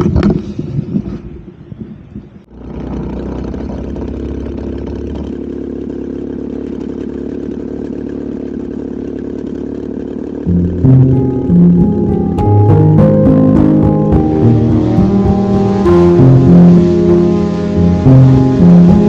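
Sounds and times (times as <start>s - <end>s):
two-stroke paramotor engine: 2.5s - 19.0s.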